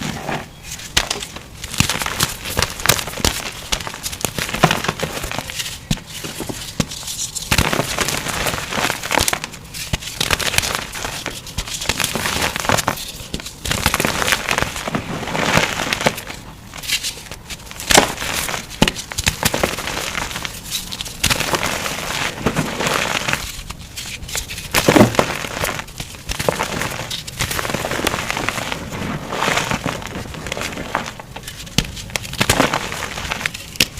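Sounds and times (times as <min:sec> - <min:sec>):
chalk crunching and crackling: 0:00.0 - 0:33.9.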